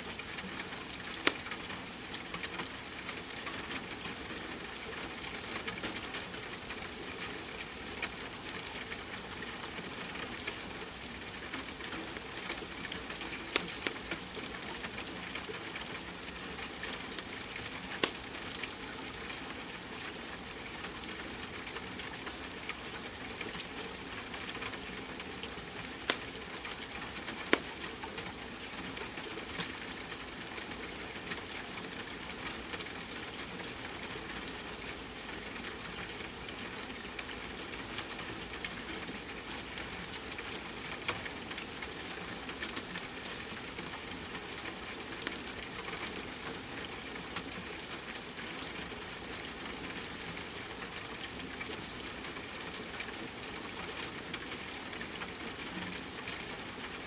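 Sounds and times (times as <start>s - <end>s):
wood fire crackling and popping: 1.2s - 1.6s, 13.2s - 14.2s, 18.0s - 18.3s, 26.0s - 26.8s, 27.4s - 27.8s.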